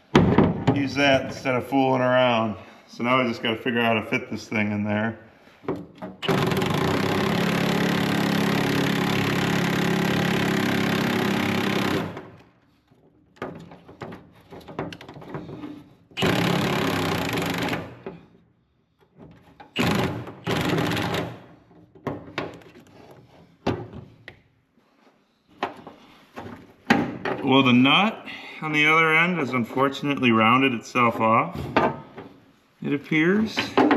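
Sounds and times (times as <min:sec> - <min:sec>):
impact wrench hammering: 0:06.2 - 0:12.4, 0:16.2 - 0:18.2, 0:19.8 - 0:21.5.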